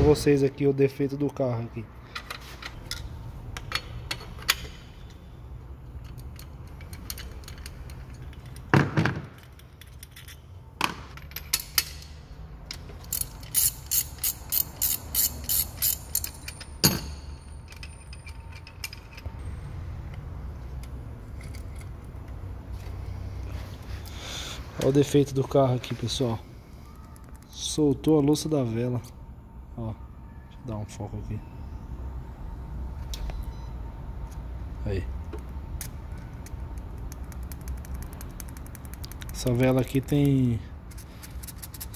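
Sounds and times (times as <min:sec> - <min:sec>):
ratchet clicks: 0:12.9 - 0:16.7, 0:35.8 - 0:41.9.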